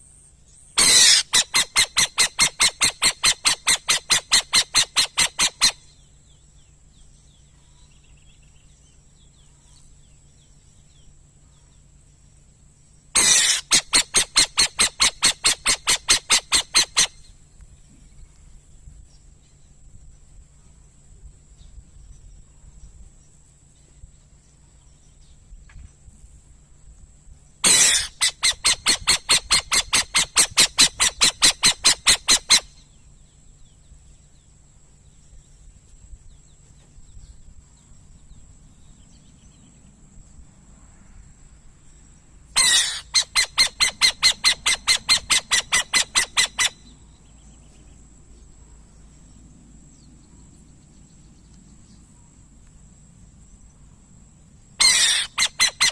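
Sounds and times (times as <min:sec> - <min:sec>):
owl calling harsh notes: 0:00.8 - 0:05.9, 0:13.2 - 0:17.3, 0:27.6 - 0:32.8, 0:42.6 - 0:46.9, 0:54.8 - 0:55.9.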